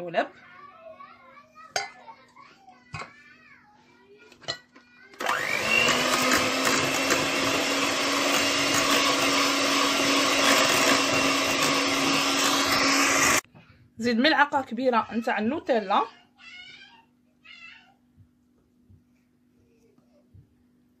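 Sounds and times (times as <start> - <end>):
electric mixer running: 5.2 - 13.4.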